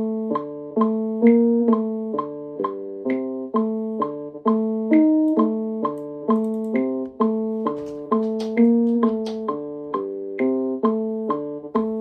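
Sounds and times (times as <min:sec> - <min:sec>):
sampled keyboard chord loop: 0:00.0 - 0:12.0
light high ticks: 0:06.0 - 0:06.8, 0:07.8 - 0:09.5.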